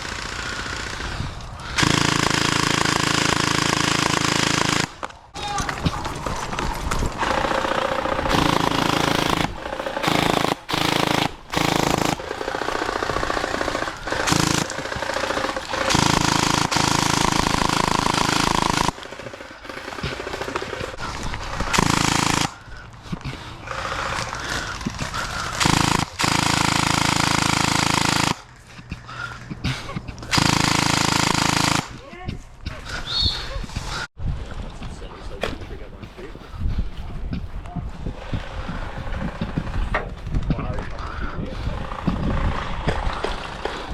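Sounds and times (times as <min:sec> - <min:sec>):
toy guns firing full-auto: 0:00.0 - 0:05.0, 0:07.2 - 0:22.7, 0:23.7 - 0:28.5, 0:30.3 - 0:32.0.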